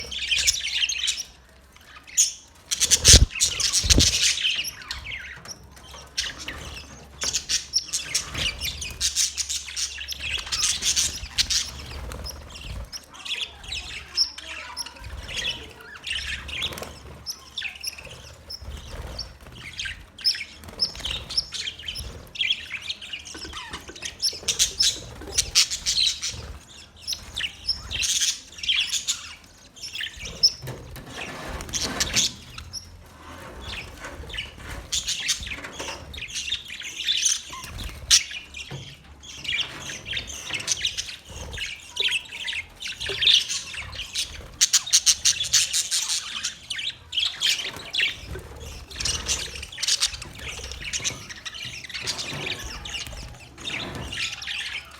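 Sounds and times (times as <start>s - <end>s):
budgerigars chirping and chattering: 0.0s - 54.9s.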